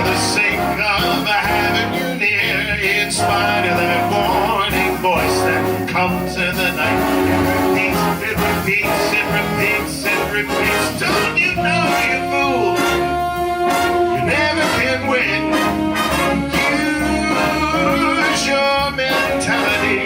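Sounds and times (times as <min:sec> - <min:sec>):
big band playing swing jazz: 0:00.0 - 0:20.0
long held horn notes: 0:03.2 - 0:18.4.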